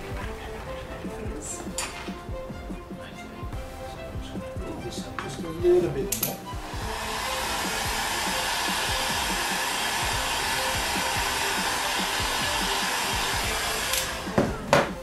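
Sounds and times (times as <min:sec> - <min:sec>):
heat gun blowing: 0:06.5 - 0:14.9
heat gun switch clicks: 0:13.9 - 0:14.1.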